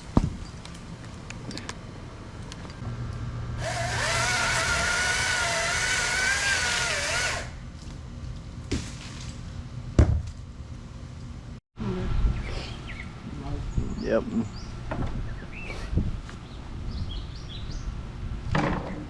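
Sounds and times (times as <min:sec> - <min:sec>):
chainsaw revving: 0:03.6 - 0:07.6.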